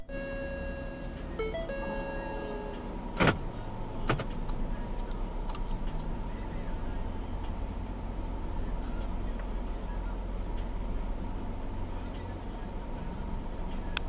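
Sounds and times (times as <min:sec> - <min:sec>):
electronic tone alert: 0:00.0 - 0:03.0
vehicle engine rumble: 0:00.0 - 0:14.0.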